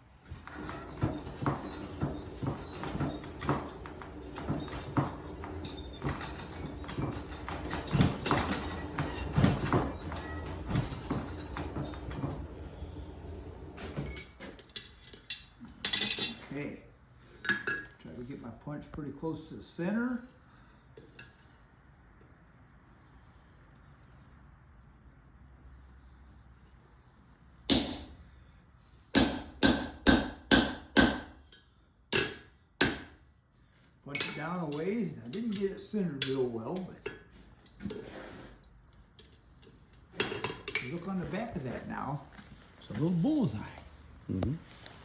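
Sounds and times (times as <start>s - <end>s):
metal tools knocking and clanking: 13.9s - 16.5s, 34.1s - 37.9s.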